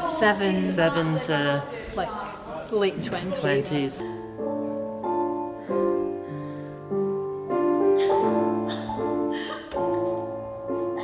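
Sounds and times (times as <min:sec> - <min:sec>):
piano chords: 0:04.0 - 0:11.0.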